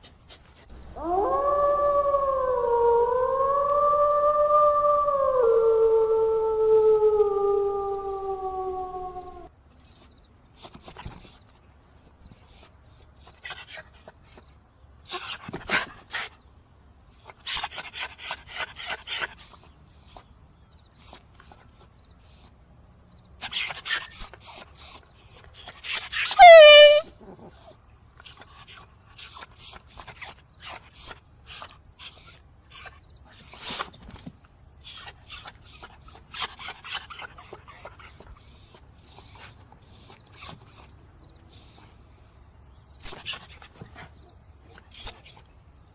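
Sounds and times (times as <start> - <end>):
dog howling: 0.9 - 9.5, 25.9 - 27.4
dog whining: 8.0 - 14.5, 17.1 - 20.3, 21.0 - 22.5, 23.4 - 34.0, 34.8 - 42.4, 43.0 - 45.5
dogs whimpering and yipping: 9.2 - 16.4, 17.1 - 20.3, 21.0 - 22.6, 23.4 - 42.4, 43.0 - 45.5.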